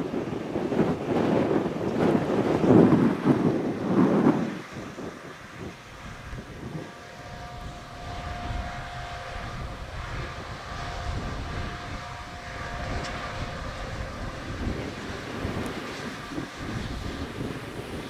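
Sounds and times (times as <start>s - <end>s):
combine harvester drone: 0.0s - 18.0s
wind buffeting microphone: 0.0s - 18.0s
machine whine: 4.7s - 18.0s.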